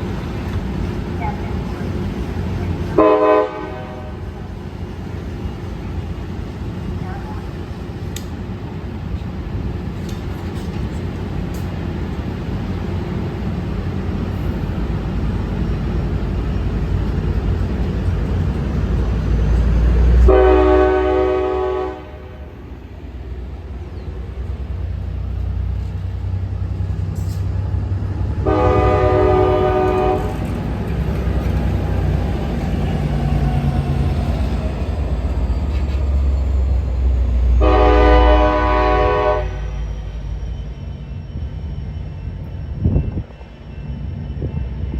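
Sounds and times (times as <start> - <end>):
train rumbling: 0.0 - 44.9
train horn blasts: 2.9 - 4.5, 20.1 - 22.5, 28.4 - 30.6, 37.5 - 39.8.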